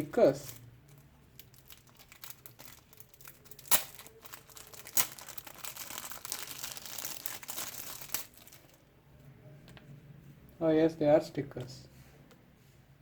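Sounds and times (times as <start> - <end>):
packaging crinkling: 0.2 - 8.9.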